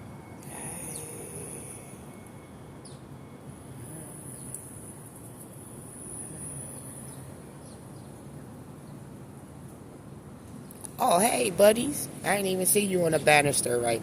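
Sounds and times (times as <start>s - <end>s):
low steady hum: 0.0s - 14.0s
insects trilling: 0.4s - 4.6s.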